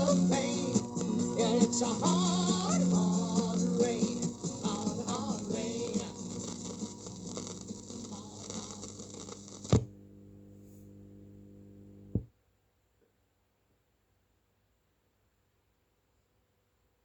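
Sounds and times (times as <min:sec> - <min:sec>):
pop-rock music: 0:00.0 - 0:07.0
low electrical hum: 0:02.9 - 0:12.3.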